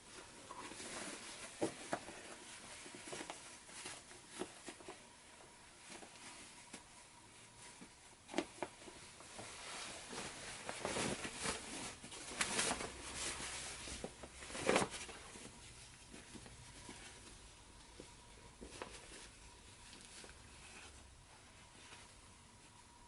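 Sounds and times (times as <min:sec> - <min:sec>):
fabric rustling and swishing: 0:05.7 - 0:22.8.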